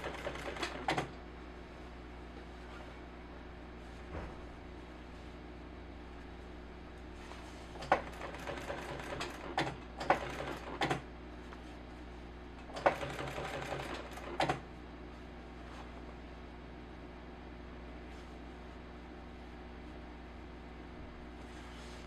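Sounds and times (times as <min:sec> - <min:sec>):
sewing machine stitching: 0:00.0 - 0:01.2, 0:07.8 - 0:11.0, 0:12.7 - 0:14.6.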